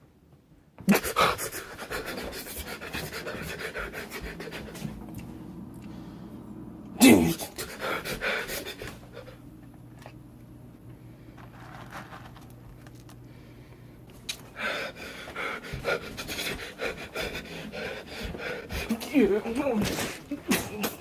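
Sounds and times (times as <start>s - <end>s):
person panting heavily: 0.9s - 6.3s, 7.1s - 9.4s, 14.5s - 21.0s.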